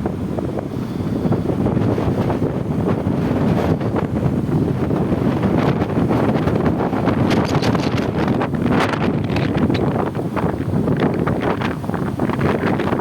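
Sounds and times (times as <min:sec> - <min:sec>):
gale-force wind buffeting microphone: 0:00.0 - 0:13.0.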